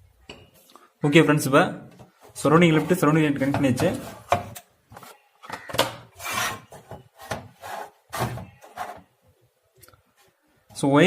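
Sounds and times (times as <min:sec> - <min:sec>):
rubbing and scraping handling noise: 0:01.9 - 0:09.4.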